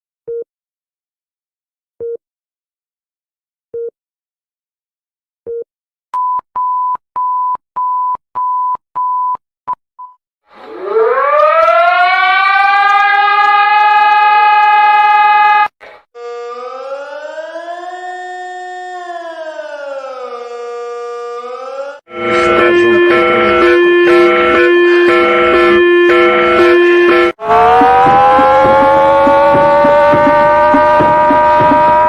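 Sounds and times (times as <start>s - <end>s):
civil defense siren: 10.6s - 32.0s
siren wailing up and down: 10.6s - 32.0s
short beeps: 22.1s - 27.4s.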